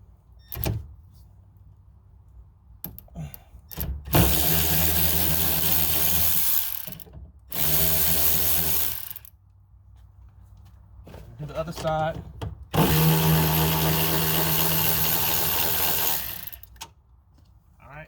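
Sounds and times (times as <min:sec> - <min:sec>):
power drill running: 0:04.1 - 0:09.3, 0:12.8 - 0:16.8.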